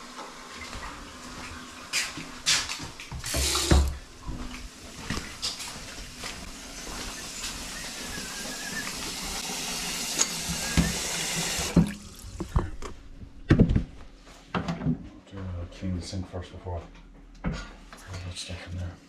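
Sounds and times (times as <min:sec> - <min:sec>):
faucet running into sink: 0:03.2 - 0:04.0, 0:05.4 - 0:12.6.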